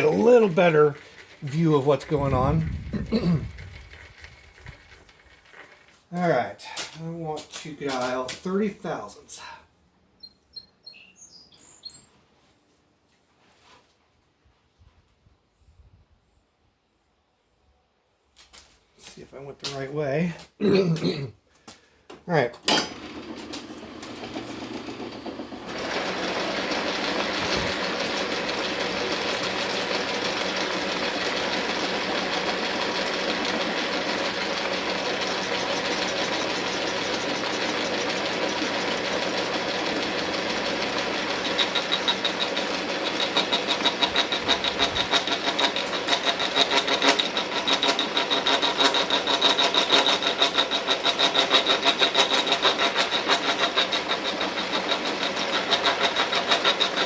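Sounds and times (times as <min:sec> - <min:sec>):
high ringing cutter tone: 0:00.0 - 0:03.6, 0:22.7 - 0:57.0
milling machine running: 0:00.0 - 0:05.8, 0:22.8 - 0:57.0.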